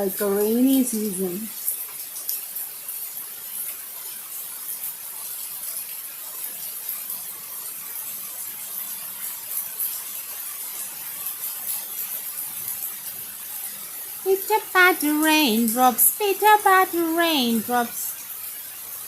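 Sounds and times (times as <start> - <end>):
faint ticks of raindrops: 0.0 - 19.0
heavy rain hissing: 10.5 - 19.0.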